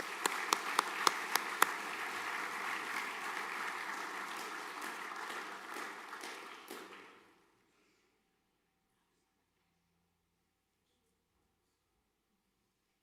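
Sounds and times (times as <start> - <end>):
loud single claps close by: 0.0 - 2.0
audience applauding: 0.0 - 7.4.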